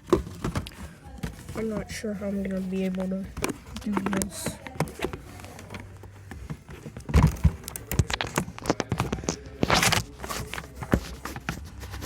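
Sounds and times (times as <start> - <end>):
heavy thumps: 0.0 - 12.0
objects clicking and knocking: 0.0 - 12.0
rustling scrape: 0.0 - 12.0.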